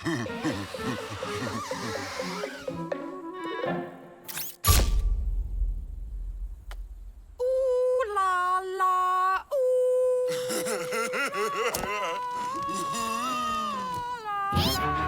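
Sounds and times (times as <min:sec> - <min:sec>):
cartoon character wailing: 0:11.4 - 0:15.0.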